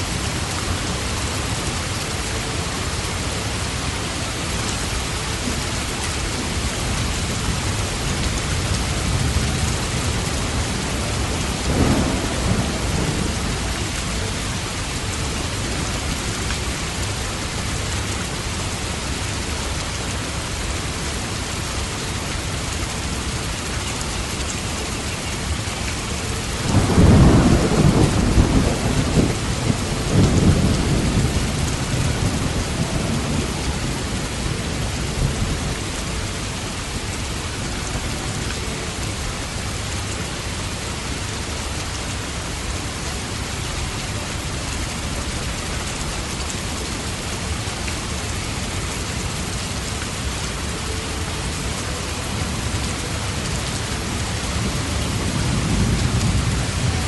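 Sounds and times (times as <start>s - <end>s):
heavy rain: 0.0s - 57.0s
thunder rumble: 6.9s - 16.2s, 26.4s - 36.4s, 52.2s - 57.0s.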